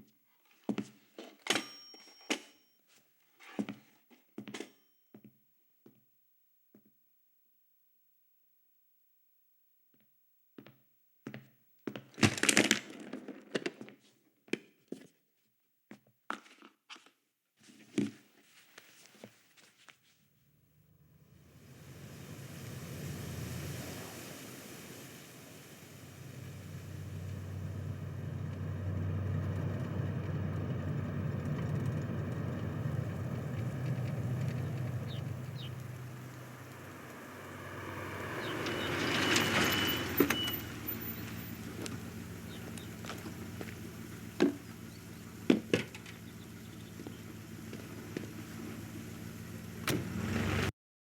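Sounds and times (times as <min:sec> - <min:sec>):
road noise: 0:20.4 - 0:50.7
car engine running: 0:20.5 - 0:50.7
short high chirps: 0:38.0 - 0:41.6.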